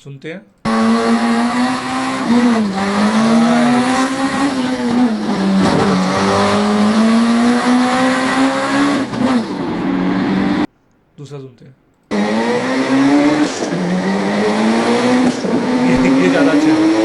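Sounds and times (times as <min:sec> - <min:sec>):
sports car engine revving: 0:00.6 - 0:10.7, 0:12.1 - 0:17.0.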